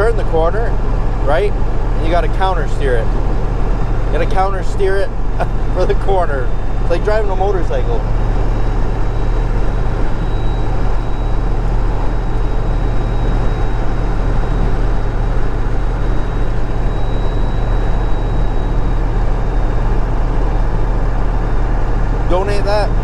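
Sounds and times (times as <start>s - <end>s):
diesel engine cruising: 0.0s - 23.0s
high turbo whistle: 5.8s - 22.3s.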